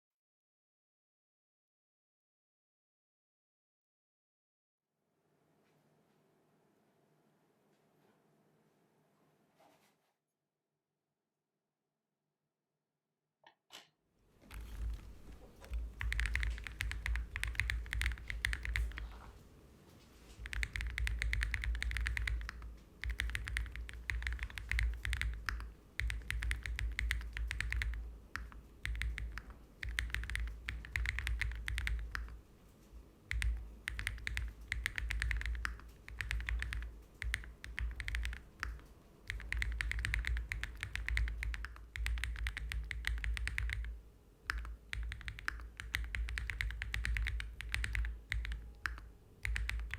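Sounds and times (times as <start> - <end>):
mechanical keyboard typing: 14.5 - 19.3, 20.4 - 32.4, 33.3 - 49.9.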